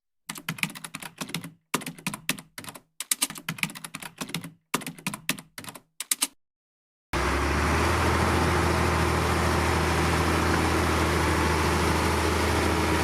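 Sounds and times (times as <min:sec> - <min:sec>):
keyboard typing clicks: 0:00.3 - 0:06.4.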